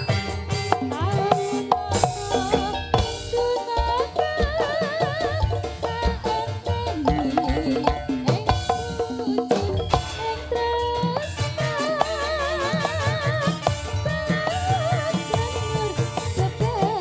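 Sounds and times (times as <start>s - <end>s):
hand drums beating: 0.0s - 10.3s.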